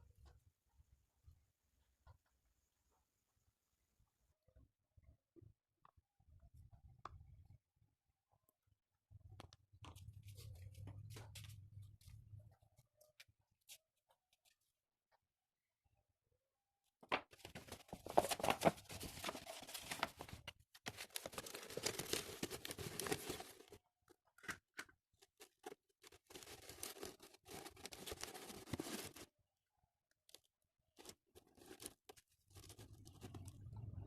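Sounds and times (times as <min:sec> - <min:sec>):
handling scraping and rustling: 0:17.4 - 0:29.3.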